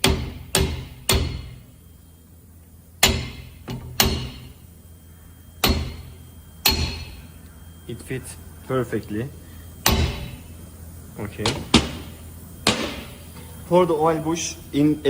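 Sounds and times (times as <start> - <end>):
hammer tapping metal tool: 0.0 - 1.6, 5.6 - 7.2.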